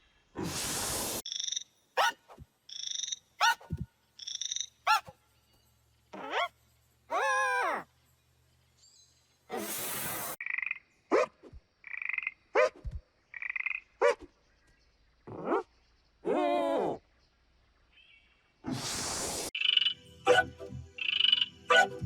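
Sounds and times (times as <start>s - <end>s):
short hiss: 0.4s - 1.2s, 9.5s - 10.4s, 18.7s - 19.5s.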